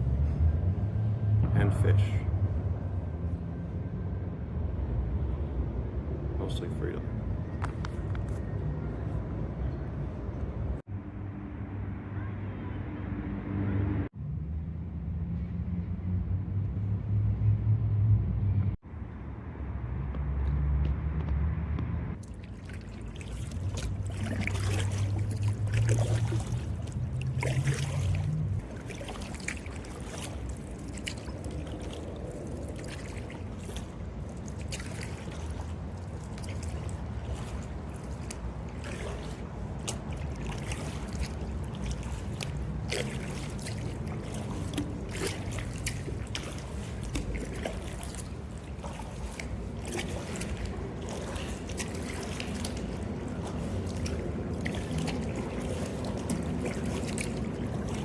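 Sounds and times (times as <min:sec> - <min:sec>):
water splashing around kayak: 0:22.1 - 0:58.0.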